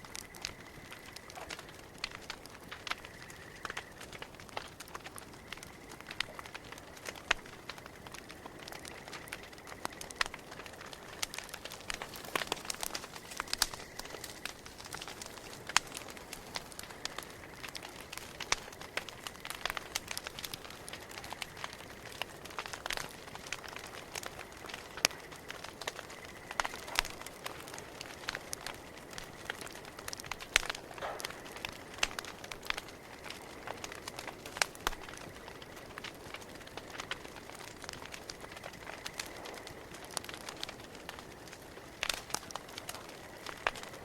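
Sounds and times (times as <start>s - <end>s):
campfire crackling and popping: 0.0s - 44.0s.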